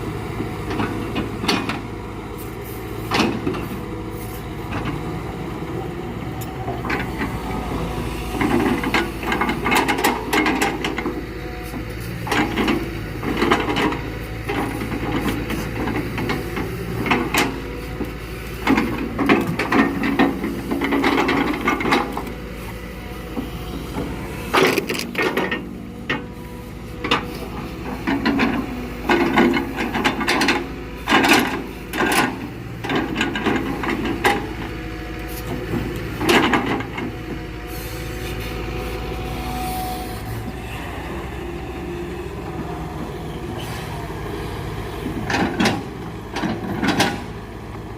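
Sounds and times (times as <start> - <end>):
excavator engine running: 0.0 - 47.9.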